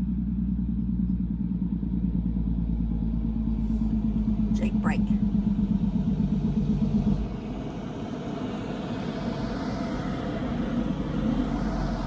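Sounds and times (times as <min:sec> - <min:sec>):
vehicle engine drone: 0:00.0 - 0:12.0.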